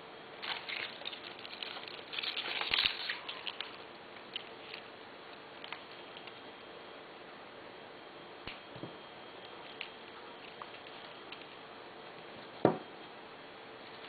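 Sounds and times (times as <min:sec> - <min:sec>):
rustling of stems and leaves: 0:00.4 - 0:06.4.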